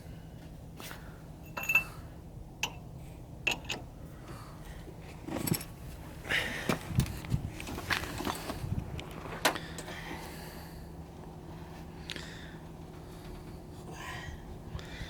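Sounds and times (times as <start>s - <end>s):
steady low hum: 0.0s - 15.0s
metal tools clinking and knocking: 1.4s - 2.0s, 3.5s - 3.9s.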